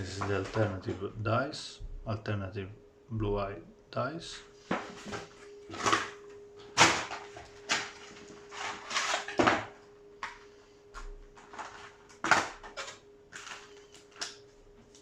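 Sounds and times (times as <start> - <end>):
faint steady hum: 0.0 - 15.0
packaging rustle: 4.9 - 10.4, 11.3 - 15.0.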